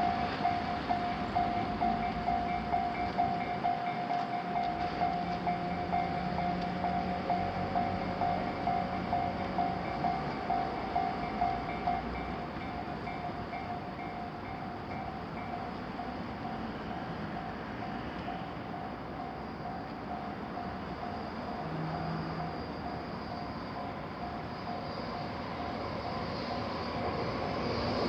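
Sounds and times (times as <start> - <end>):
railroad crossing bell ringing: 0.0 - 28.0.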